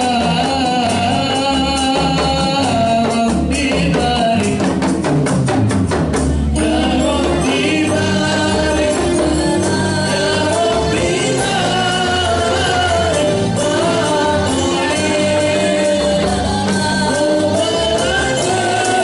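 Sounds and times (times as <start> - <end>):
frame drums: 0.0 - 19.0
voices singing together: 6.4 - 19.0.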